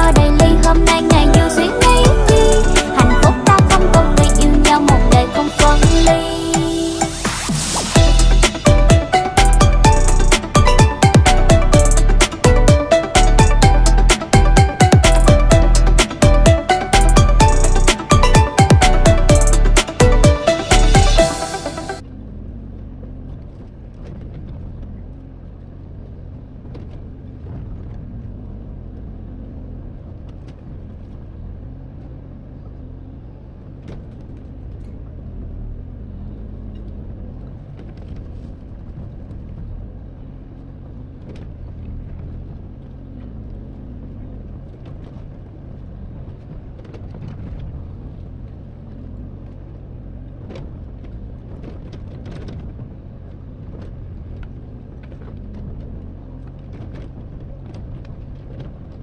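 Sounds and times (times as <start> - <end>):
excavator diesel engine running: 0.0 - 22.3.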